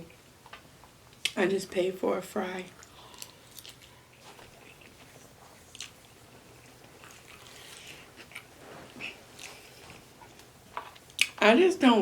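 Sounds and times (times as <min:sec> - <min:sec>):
person chewing food: 0:02.8 - 0:11.4.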